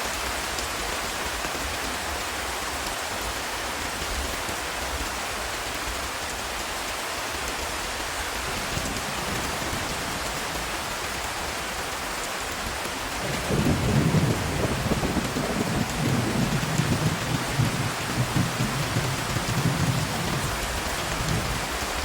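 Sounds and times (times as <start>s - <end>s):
rain falling on hard ground: 0.0s - 22.0s
thunder rolling: 8.5s - 11.0s, 13.0s - 22.0s.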